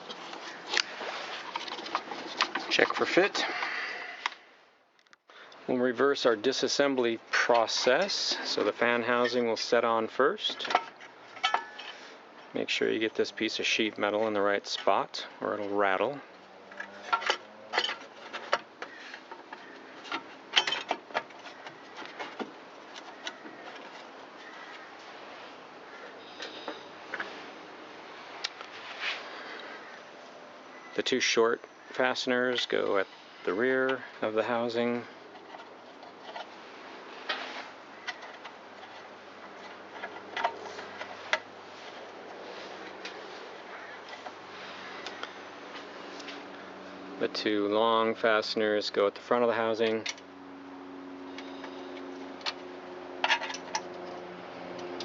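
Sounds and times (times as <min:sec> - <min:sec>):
faint steady hum: 0:00.0 - 0:55.0
metal tools clicking and tapping: 0:10.6 - 0:12.0.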